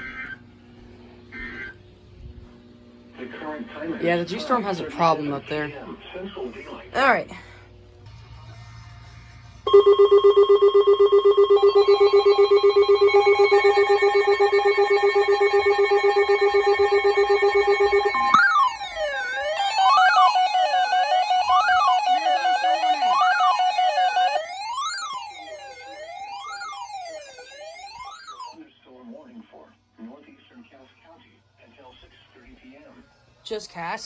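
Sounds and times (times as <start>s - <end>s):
pulsing electronic alarm beep: 9.7s - 28.6s
steady pulsing tone: 9.7s - 28.6s
rising and falling siren sweeps: 10.8s - 28.6s.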